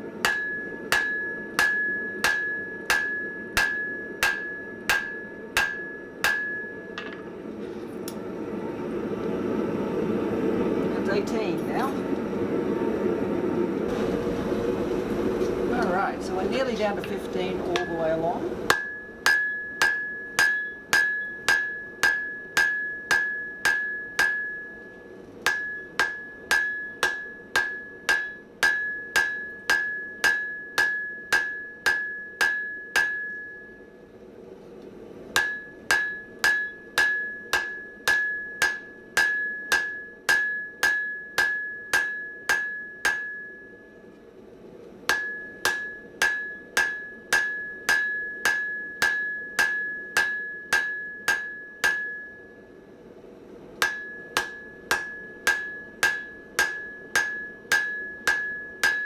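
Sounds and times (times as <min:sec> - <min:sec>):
hammer striking steel on anvil: 0:00.1 - 0:07.4, 0:14.9 - 0:33.9, 0:35.4 - 0:44.0, 0:45.1 - 0:52.6, 0:53.8 - 0:59.0
anvil ringing: 0:00.2 - 0:07.3, 0:15.8 - 0:24.9, 0:25.5 - 0:33.8, 0:35.4 - 0:44.0, 0:45.1 - 0:52.6, 0:53.8 - 0:59.0.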